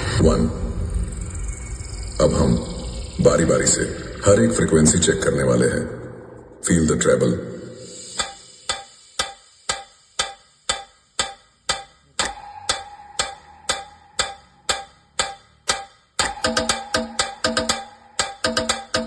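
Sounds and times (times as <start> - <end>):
faint held tone: 0.0 - 5.0, 12.1 - 15.5
sharp crisp ticks from speaker: 8.2 - 19.0.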